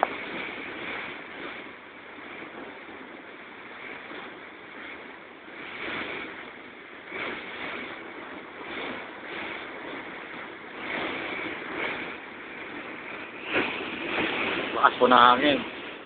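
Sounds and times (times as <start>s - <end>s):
rough sea: 0.0s - 16.0s
strong wind: 0.0s - 16.0s.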